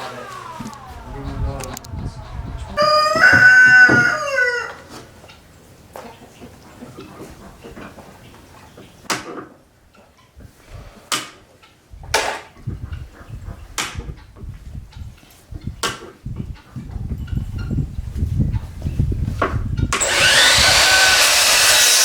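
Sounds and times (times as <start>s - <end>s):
low rumble: 0.0s - 4.0s.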